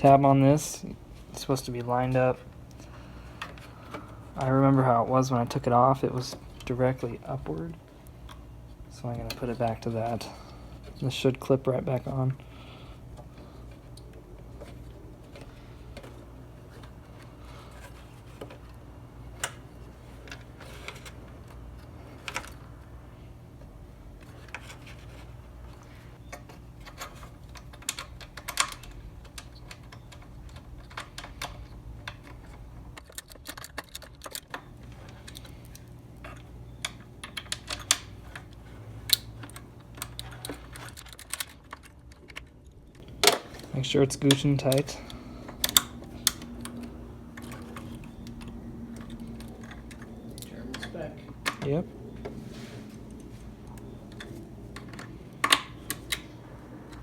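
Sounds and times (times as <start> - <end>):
steady low hum: 0.0 - 57.0
plastic parts clicking and tapping: 26.3 - 52.4, 53.1 - 57.0.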